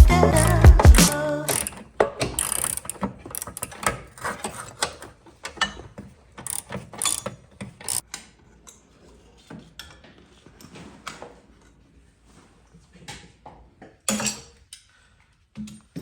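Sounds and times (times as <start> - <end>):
socket ratchet clicking: 0.3 - 3.8, 6.5 - 8.0.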